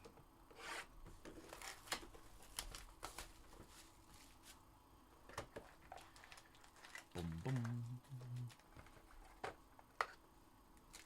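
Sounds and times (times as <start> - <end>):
cardboard and foil crinkling: 1.4 - 4.4, 5.6 - 7.8.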